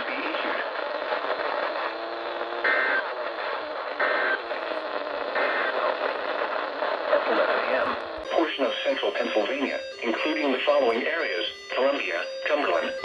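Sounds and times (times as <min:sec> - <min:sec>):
radio hiss: 0:00.0 - 0:13.0
buzzy two-tone digital data bursts: 0:08.2 - 0:13.0.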